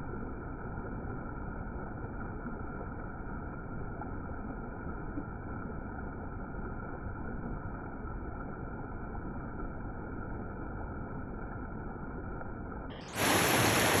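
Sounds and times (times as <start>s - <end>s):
waterfall rushing: 13.0s - 14.0s.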